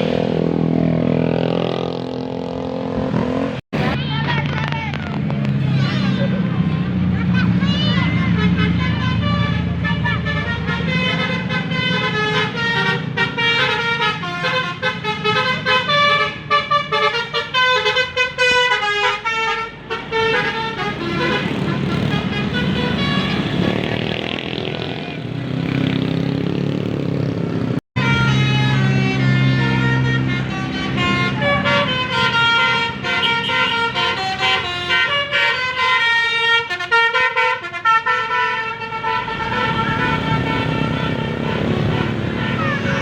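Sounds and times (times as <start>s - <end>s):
bus horn playing a tune: 7.1s - 24.0s, 28.0s - 43.0s
diesel engine running: 38.6s - 43.0s.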